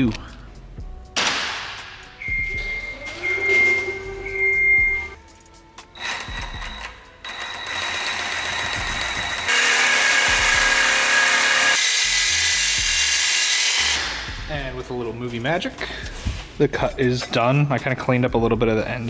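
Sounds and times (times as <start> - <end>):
power tool cutting metal pipe: 7.2 - 14.0.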